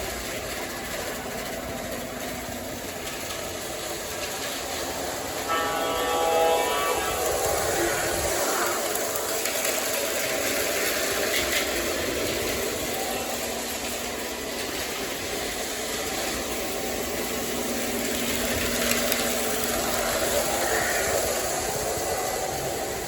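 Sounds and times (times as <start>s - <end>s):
model train running: 0.0s - 23.0s.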